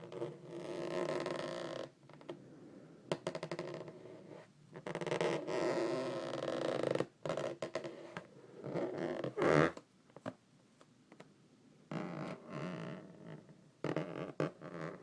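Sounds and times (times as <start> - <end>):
rubber balloon squeaking: 0.0 - 2.2, 4.8 - 9.8, 11.9 - 15.0.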